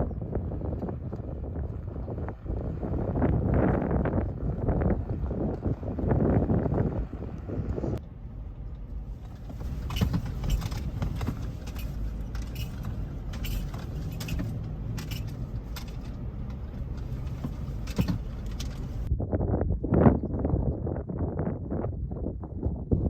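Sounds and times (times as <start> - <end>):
vehicle low rumble: 0.0 - 23.0
metallic clinks and rattles: 9.6 - 19.1.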